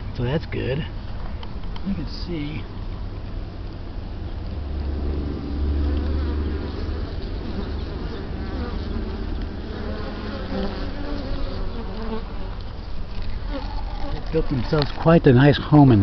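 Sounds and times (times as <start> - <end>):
low rumble: 2.7 - 7.8
bees buzzing: 4.1 - 15.2.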